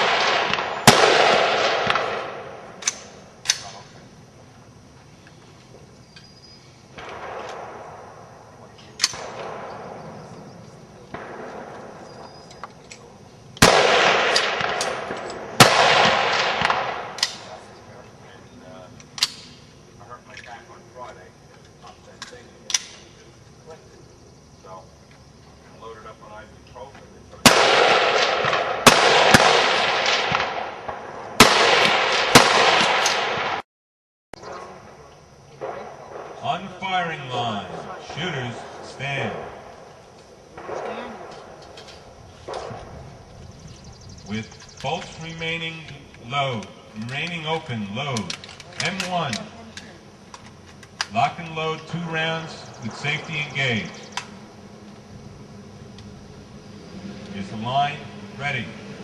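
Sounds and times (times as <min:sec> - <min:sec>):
rifle shots: 0:00.0 - 0:03.8, 0:06.9 - 0:08.4, 0:09.0 - 0:10.3, 0:11.1 - 0:12.5, 0:13.6 - 0:17.8, 0:27.4 - 0:33.6, 0:40.5 - 0:41.7, 0:42.4 - 0:43.0
rifle shots with rolling echo: 0:00.0 - 0:04.2, 0:06.9 - 0:18.4, 0:27.4 - 0:33.6, 0:34.4 - 0:43.6, 0:44.2 - 0:56.8.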